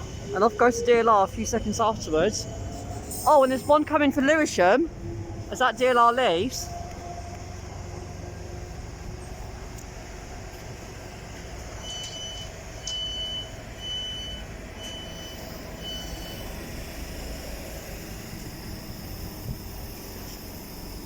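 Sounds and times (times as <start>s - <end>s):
low rumble of standing train: 0.0s - 21.0s
train door warning beeps: 11.2s - 17.5s.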